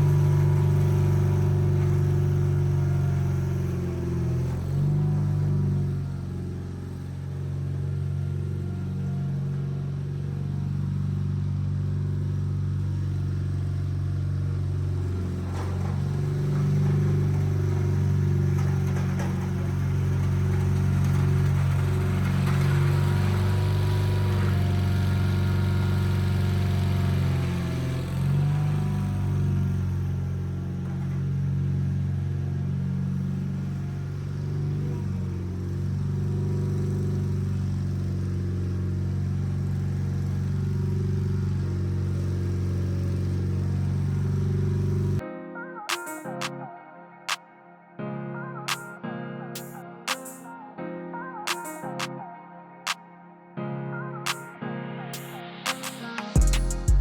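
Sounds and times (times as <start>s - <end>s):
tractor engine running under load: 0.0s - 45.2s.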